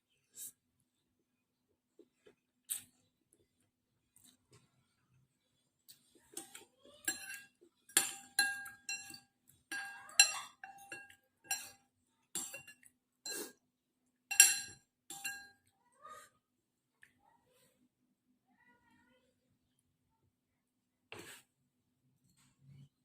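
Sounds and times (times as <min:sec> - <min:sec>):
cutlery clinking against a bowl: 0:06.3 - 0:13.6, 0:14.3 - 0:15.6.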